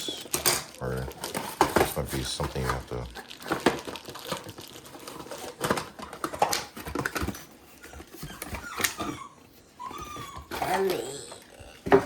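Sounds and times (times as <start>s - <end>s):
plastic parts clicking and rustling: 0.0s - 9.1s.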